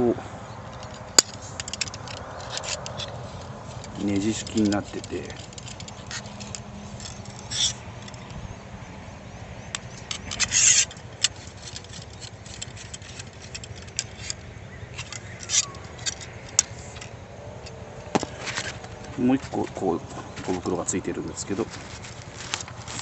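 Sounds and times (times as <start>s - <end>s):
clicks and scrapes of handling: 0.7s - 8.4s, 9.7s - 23.0s
packaging rustling: 20.2s - 23.0s.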